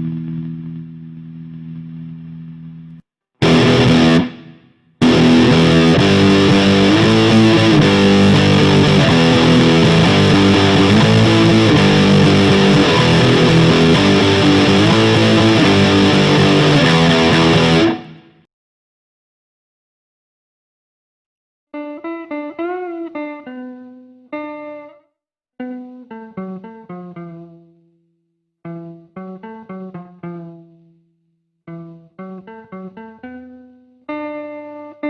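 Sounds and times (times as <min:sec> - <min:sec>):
distorted electric guitar riffs: 0:03.4 - 0:18.4.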